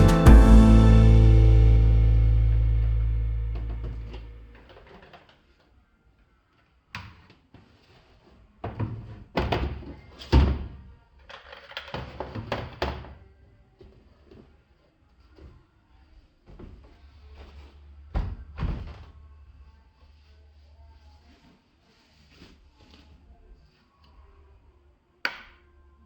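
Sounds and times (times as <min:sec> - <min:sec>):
background music: 0:00.0 - 0:04.5.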